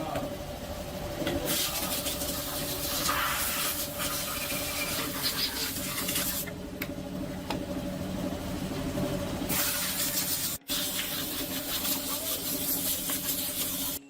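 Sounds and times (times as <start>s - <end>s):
steady machine hum: 0.0s - 14.0s
hissing spray: 1.5s - 6.4s, 9.5s - 14.0s.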